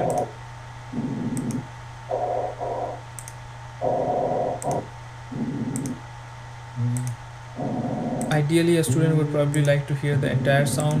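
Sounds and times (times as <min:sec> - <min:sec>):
computer mouse clicks: 0:00.0 - 0:00.3, 0:01.2 - 0:01.7, 0:03.1 - 0:03.4, 0:04.6 - 0:04.9, 0:05.6 - 0:06.0, 0:07.0 - 0:07.2, 0:09.4 - 0:09.8, 0:10.8 - 0:11.0.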